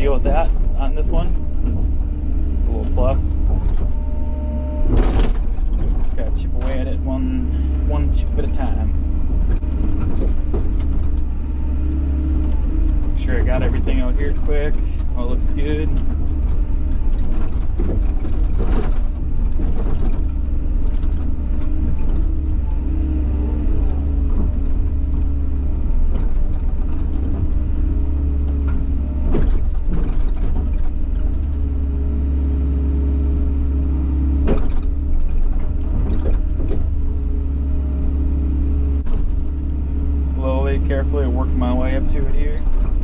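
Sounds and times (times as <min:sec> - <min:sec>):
excavator diesel engine running: 0:00.0 - 0:43.0.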